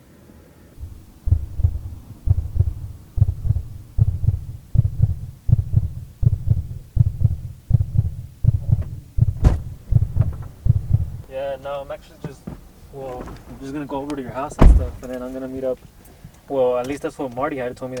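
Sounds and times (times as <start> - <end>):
muffled bass beat in a car: 0.8 - 11.3.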